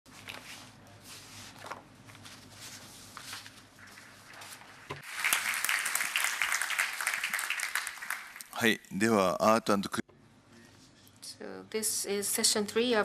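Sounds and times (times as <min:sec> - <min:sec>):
rustling and shuffling: 0:00.1 - 0:04.9
audience applause: 0:05.0 - 0:08.8.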